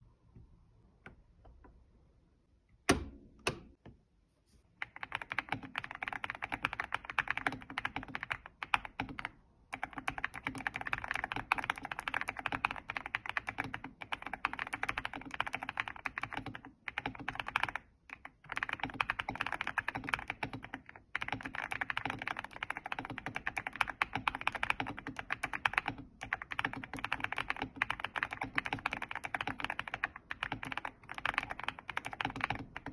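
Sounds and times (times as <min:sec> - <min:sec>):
mechanical keyboard typing: 0:04.8 - 0:32.9.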